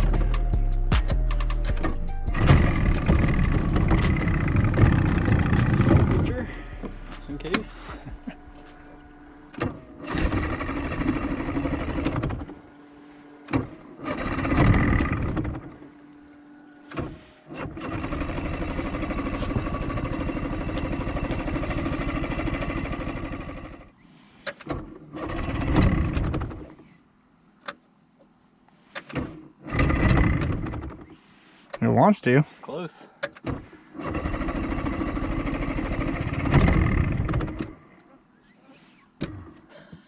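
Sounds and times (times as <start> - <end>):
outboard motor cranking: 1.5 - 26.9, 29.0 - 31.2, 33.6 - 38.0.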